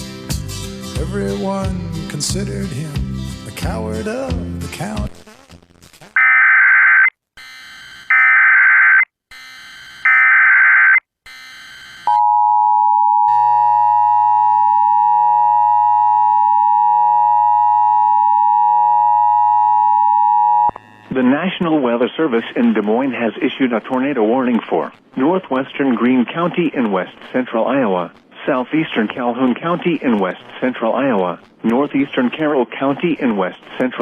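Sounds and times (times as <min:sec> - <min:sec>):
steady attention tone: 0:12.0 - 0:22.4
faint static: 0:13.3 - 0:34.0.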